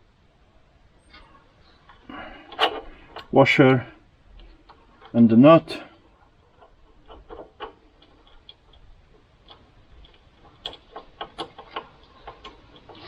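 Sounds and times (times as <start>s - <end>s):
metal hardware clicking: 1.9s - 3.8s, 6.5s - 13.0s.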